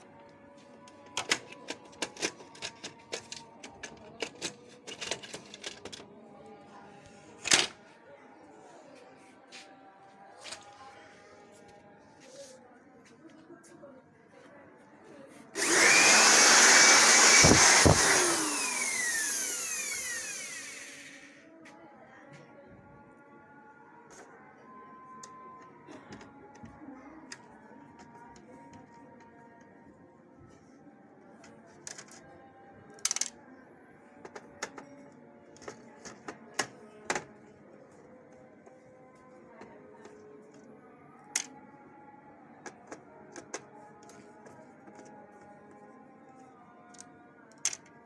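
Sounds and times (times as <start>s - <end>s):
plastic parts clicking and knocking: 1.1s - 6.0s
electric air blower whine: 15.6s - 21.4s
soft background music: 21.6s - 48.0s.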